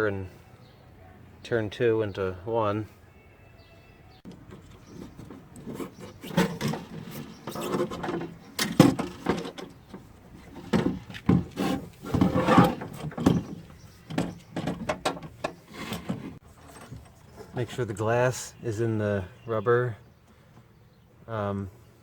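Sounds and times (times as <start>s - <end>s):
clunks and knocks: 4.2s - 17.6s
scraping: 4.3s - 18.0s.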